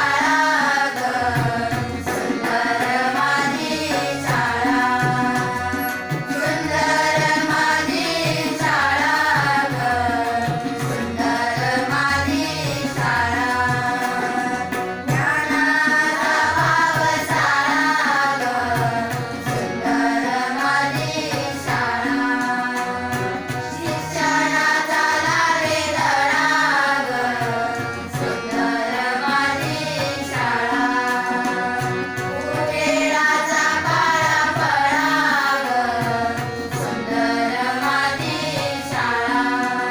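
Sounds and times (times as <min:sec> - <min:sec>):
girls singing: 0:00.0 - 0:39.9
harmonium chords: 0:00.0 - 0:39.9
tabla drumming: 0:00.0 - 0:39.9.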